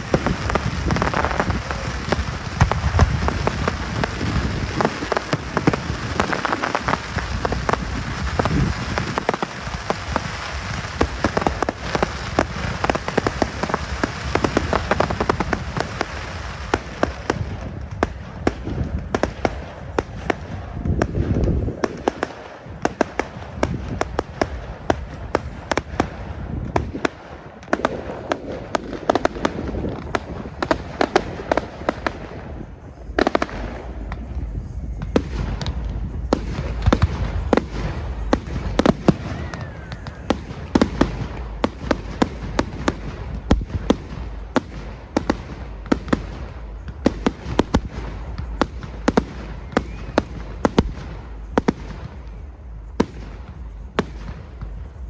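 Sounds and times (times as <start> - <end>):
fireworks bangs and crackles: 0.0 - 55.0
low rumble: 32.1 - 55.0.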